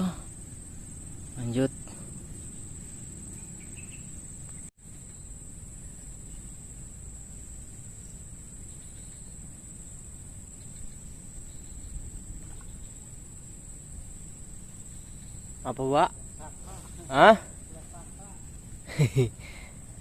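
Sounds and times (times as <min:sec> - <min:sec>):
insects droning: 0:00.0 - 0:20.0
low rumbling wind: 0:00.0 - 0:20.0.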